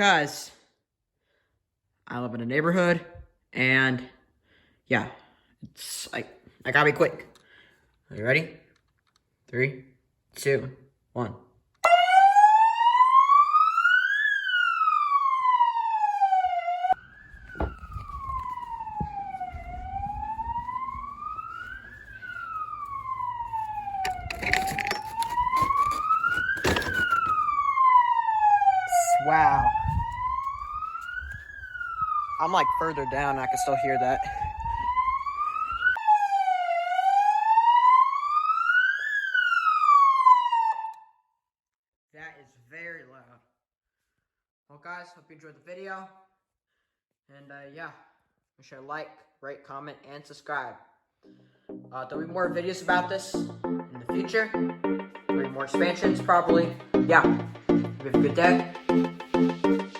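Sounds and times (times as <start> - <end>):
police siren wailing: 11.8 - 41.2, 51.7 - 59.9.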